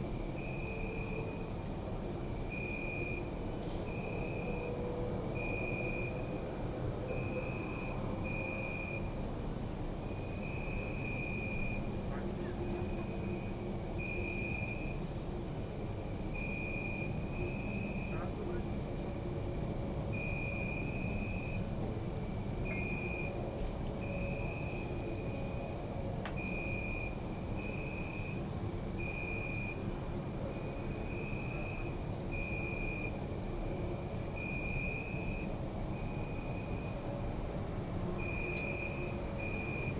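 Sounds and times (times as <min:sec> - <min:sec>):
cricket trilling in bursts: 0:00.0 - 0:39.9
crickets chirping: 0:00.0 - 0:39.9.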